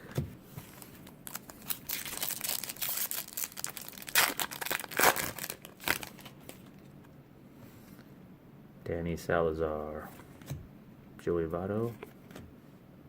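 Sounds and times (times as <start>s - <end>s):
plastic wrapper crinkling and tearing: 0.8s - 6.9s.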